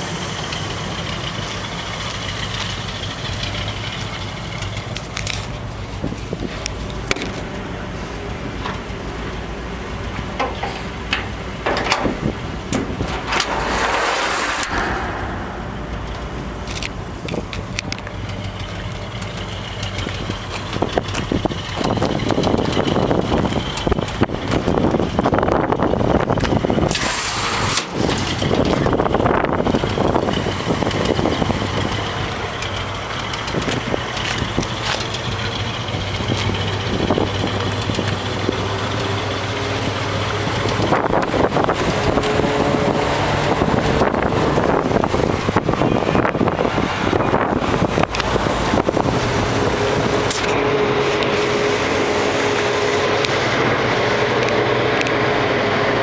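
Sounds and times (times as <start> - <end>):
truck engine revving: 0.0 - 56.0.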